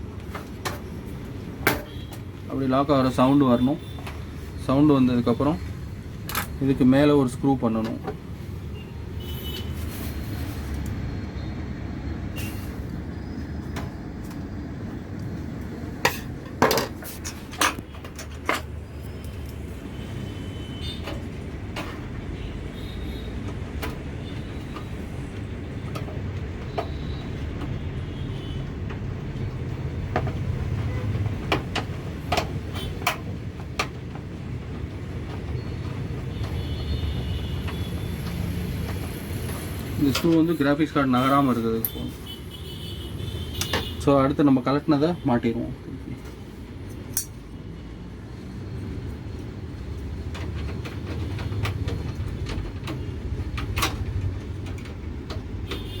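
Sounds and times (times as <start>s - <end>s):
sharp metal clicks and taps: 47.0s - 47.4s.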